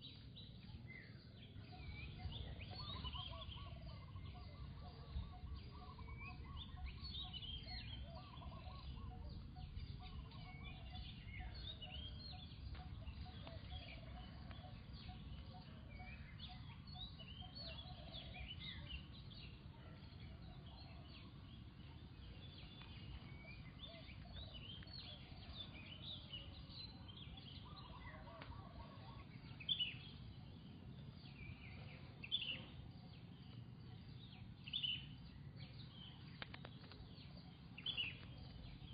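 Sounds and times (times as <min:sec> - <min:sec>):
high chirping animal calls: 0:01.5 - 0:19.2.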